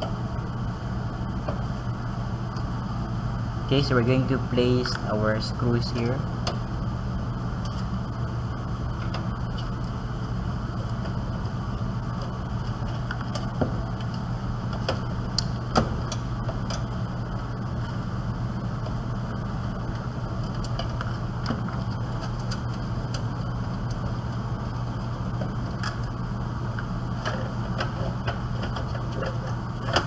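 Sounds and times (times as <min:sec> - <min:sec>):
low room hum: 0:00.0 - 0:30.0.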